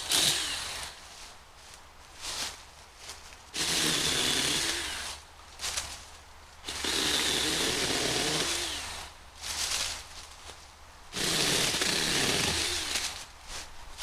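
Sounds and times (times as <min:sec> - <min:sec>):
small electric chainsaw cutting brush: 0:00.0 - 0:01.0, 0:03.6 - 0:05.2, 0:06.6 - 0:09.2, 0:11.1 - 0:13.3.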